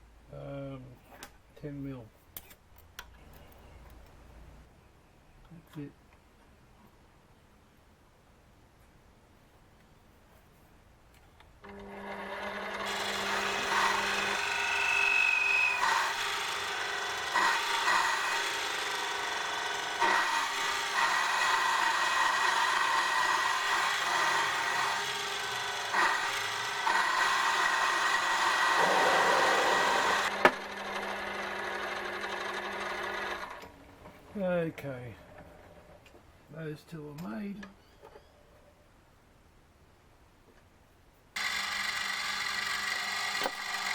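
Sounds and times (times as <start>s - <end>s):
lathe motor humming: 11.7s - 33.6s, 41.4s - 43.9s
cutting tool scraping metal: 12.8s - 30.3s.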